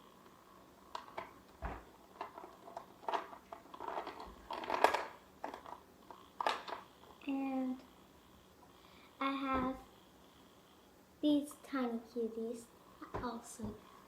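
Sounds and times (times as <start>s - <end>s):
plastic toy figures handled: 1.0s - 5.8s.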